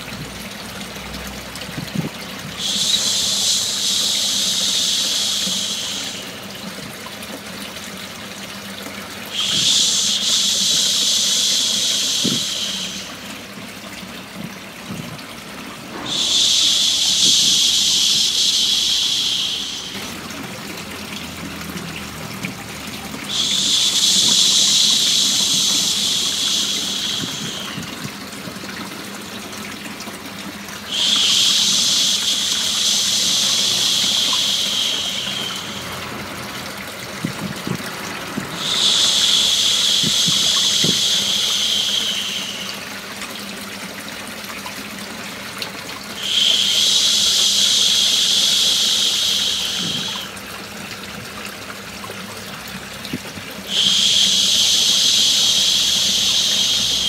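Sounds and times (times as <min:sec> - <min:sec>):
running water: 0:00.0 - 0:57.0
person shushing: 0:09.3 - 0:13.2, 0:15.9 - 0:20.7, 0:23.3 - 0:28.0, 0:53.7 - 0:57.0.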